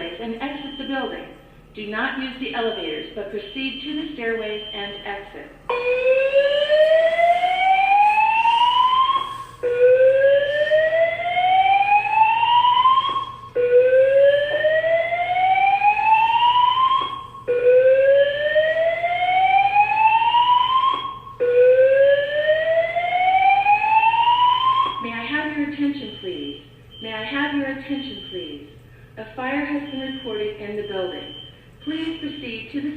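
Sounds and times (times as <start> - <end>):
fire alarm whoop tone: 2.6 - 25.1, 29.8 - 32.6.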